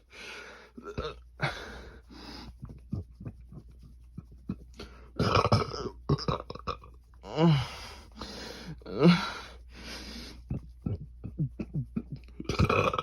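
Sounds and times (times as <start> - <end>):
breath: 0.1 - 0.8, 1.4 - 2.5, 7.5 - 10.4
person burping: 0.8 - 1.2, 5.2 - 7.6, 11.3 - 13.0.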